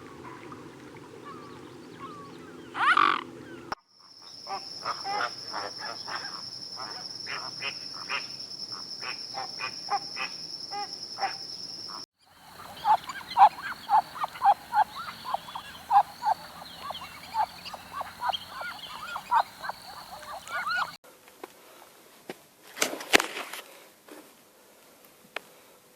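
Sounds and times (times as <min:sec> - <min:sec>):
animal calls: 0:04.2 - 0:11.4, 0:12.3 - 0:21.0.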